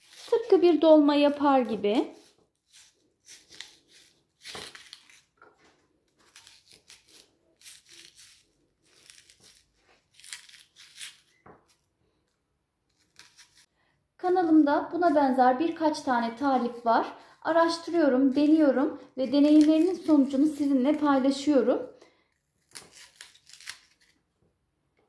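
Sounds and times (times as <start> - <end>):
corer scraping onion: 0.0 - 0.8, 1.6 - 5.4, 6.1 - 11.8, 12.9 - 13.7, 22.5 - 24.2.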